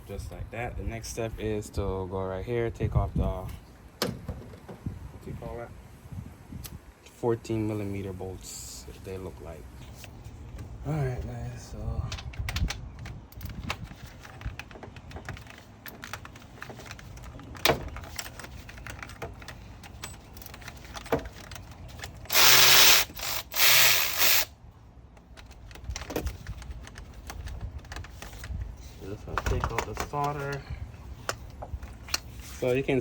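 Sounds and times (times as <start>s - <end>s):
ratchet clicks: 19.0s - 24.5s
power tool bursts: 22.3s - 24.5s.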